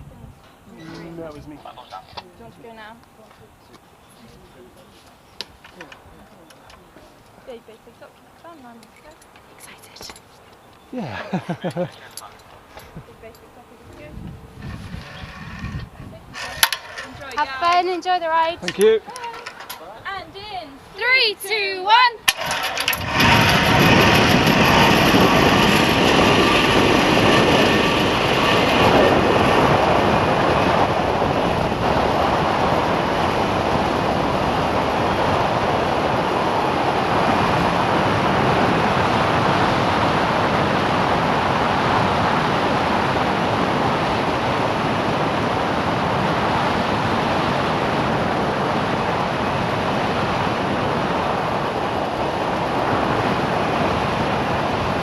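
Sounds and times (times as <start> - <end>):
wind buffeting a microphone: 0.0 - 55.0
trolley running along a cable: 11.0 - 20.2, 20.8 - 55.0.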